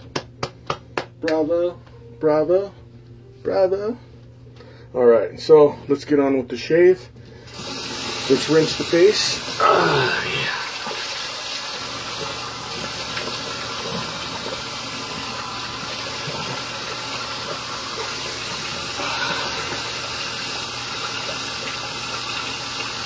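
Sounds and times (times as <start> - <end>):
sink faucet running: 7.5 - 23.0.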